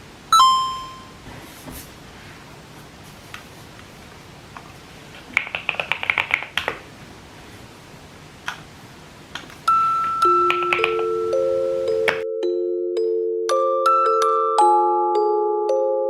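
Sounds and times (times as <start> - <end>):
bell-like mallet percussion music: 0.3 - 1.2, 9.7 - 16.0.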